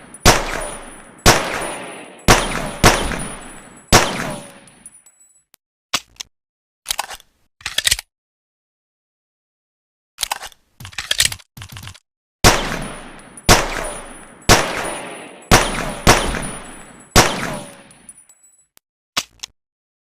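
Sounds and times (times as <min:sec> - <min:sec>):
gunshots with long echo: 0:00.0 - 0:04.8, 0:12.4 - 0:18.0.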